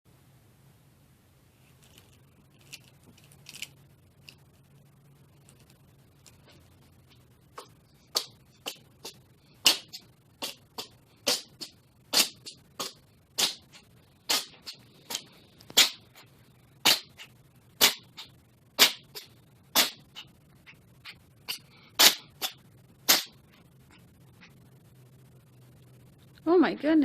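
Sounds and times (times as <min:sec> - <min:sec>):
cat sneezing: 0:16.8 - 0:20.2, 0:21.5 - 0:23.4.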